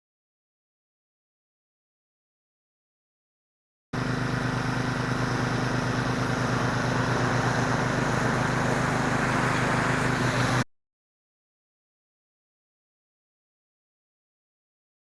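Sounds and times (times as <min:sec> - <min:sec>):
pressure washer engine droning: 0:04.0 - 0:10.6
water spray hissing: 0:05.0 - 0:10.6.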